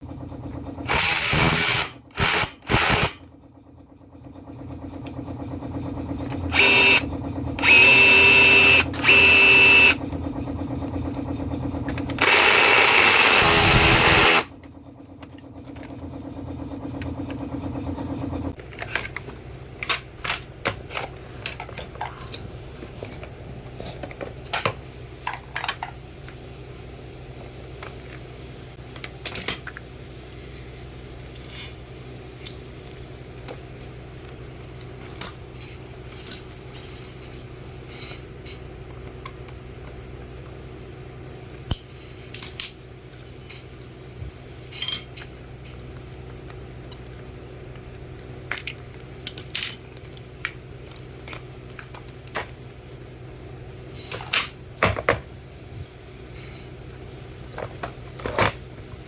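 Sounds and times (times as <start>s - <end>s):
steady hum: 0.0s - 27.2s
rotary hammer bursts: 0.8s - 3.2s, 12.2s - 14.5s.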